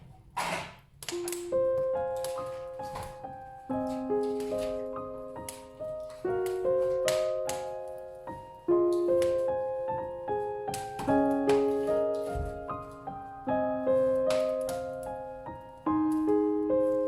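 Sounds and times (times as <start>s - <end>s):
slow solo piano: 1.0s - 17.0s.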